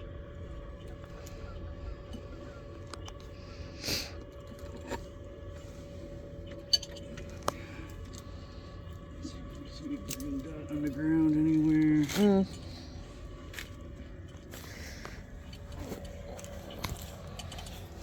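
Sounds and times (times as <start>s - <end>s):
steady low hum: 0.0s - 18.0s
light clicks and clinks: 6.5s - 8.3s, 15.4s - 18.0s.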